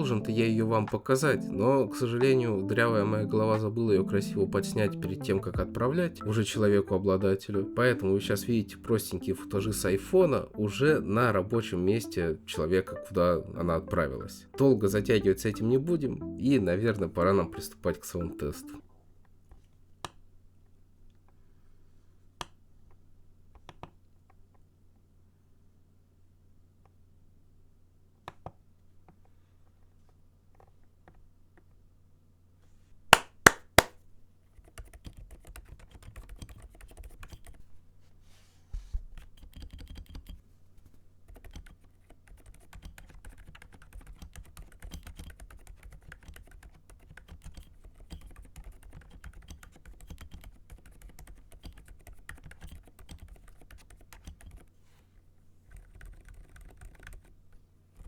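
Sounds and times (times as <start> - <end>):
soft keyboard typing: 0.0 - 18.8, 34.5 - 37.7, 39.2 - 40.4, 41.2 - 54.8, 55.6 - 58.0.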